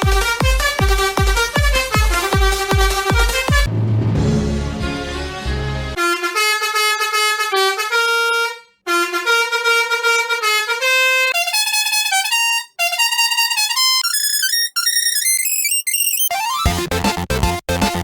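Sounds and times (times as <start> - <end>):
musical bus horn melody: 0.0 - 3.8, 4.8 - 14.9.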